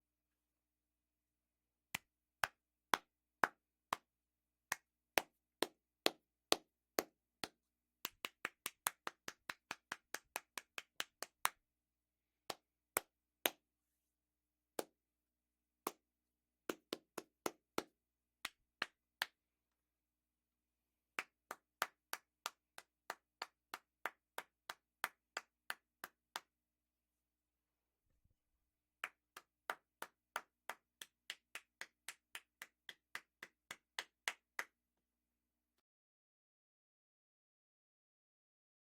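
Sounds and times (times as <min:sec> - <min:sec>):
hand claps: 0:01.9 - 0:04.1, 0:04.7 - 0:11.6, 0:12.5 - 0:13.7, 0:14.8 - 0:15.0, 0:15.8 - 0:16.1, 0:16.7 - 0:19.4, 0:21.2 - 0:26.6, 0:29.0 - 0:34.8.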